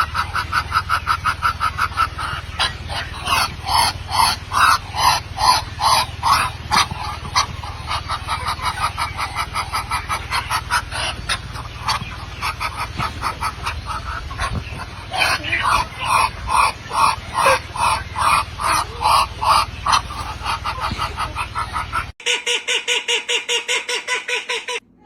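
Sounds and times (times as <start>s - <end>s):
farm animals calling: 0.0s - 24.8s.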